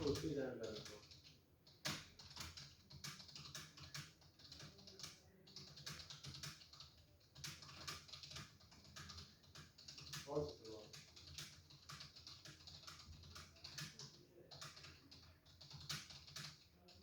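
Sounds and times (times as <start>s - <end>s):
typing on a keyboard: 0.0s - 17.0s.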